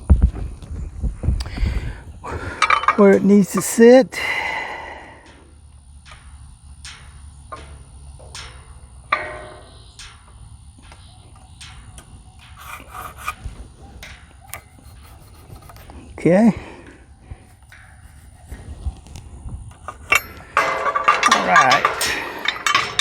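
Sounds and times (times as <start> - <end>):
pencil scratching on wood: 14.5 - 16.1.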